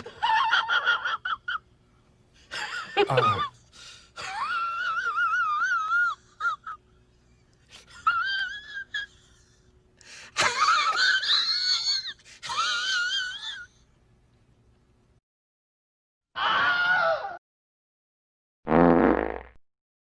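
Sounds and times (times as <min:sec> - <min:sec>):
high wavering wailing cries: 0:16.4 - 0:17.4.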